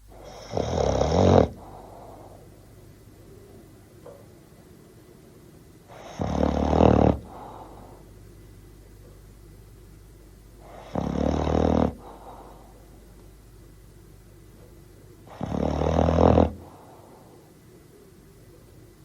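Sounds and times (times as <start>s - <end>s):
dog snoring: 0.1s - 2.5s, 5.9s - 8.1s, 10.6s - 12.8s, 15.2s - 17.4s.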